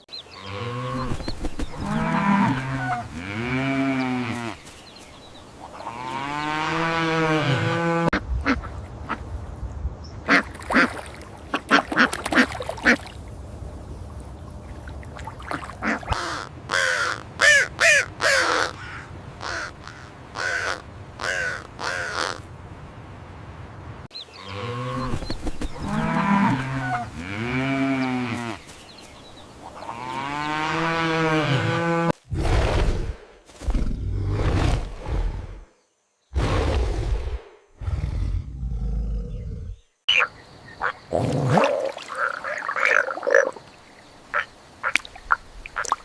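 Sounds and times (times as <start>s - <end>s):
cow mooing: 1.8s - 4.6s, 5.9s - 8.1s
ducks quacking: 10.2s - 13.1s, 15.5s - 22.4s, 40.1s - 41.3s.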